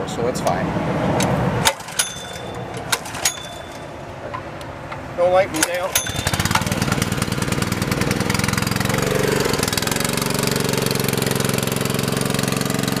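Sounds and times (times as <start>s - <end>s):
engine idling: 1.7s - 13.0s.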